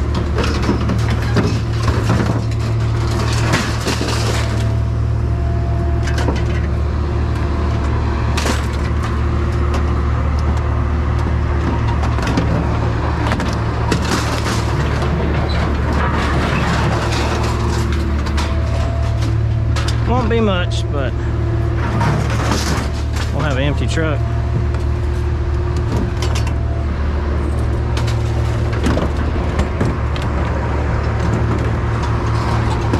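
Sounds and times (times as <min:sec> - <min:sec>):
engine humming: 0:00.0 - 0:32.9
metal knocks and clanks: 0:11.6 - 0:20.6, 0:21.6 - 0:26.7.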